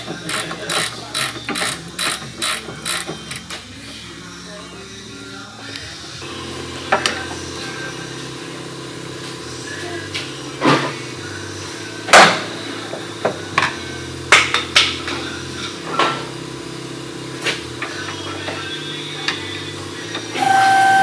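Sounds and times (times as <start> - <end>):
tools knocking on metal: 0.0 - 3.6.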